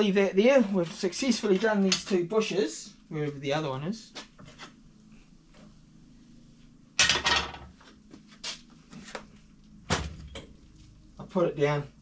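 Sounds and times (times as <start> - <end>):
metal tools clattering on workbench: 7.0 - 7.7.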